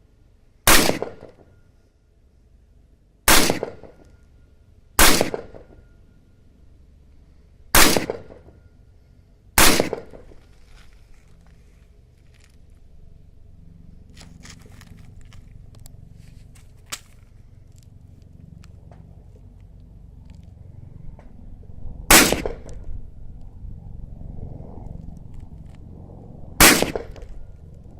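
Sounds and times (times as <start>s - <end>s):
rifle shots with echo: 0.7s - 1.4s, 3.3s - 4.0s, 5.0s - 5.8s, 7.8s - 8.5s, 9.6s - 10.4s, 22.1s - 22.8s, 26.6s - 27.2s.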